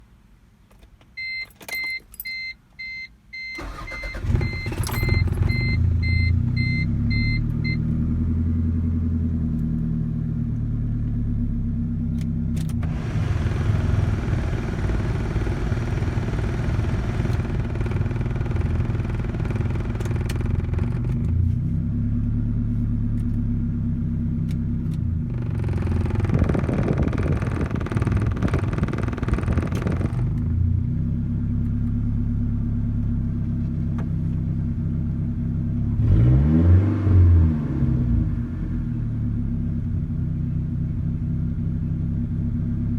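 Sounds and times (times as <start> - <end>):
car warning chime beeping: 1.2 - 7.8
car engine cranking and idling: 3.6 - 42.9.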